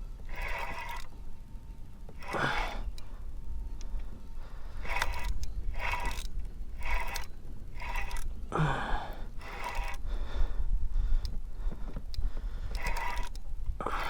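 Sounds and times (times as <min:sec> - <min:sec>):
person breathing hard: 0:02.2 - 0:03.3, 0:08.5 - 0:13.2, 0:13.8 - 0:14.0.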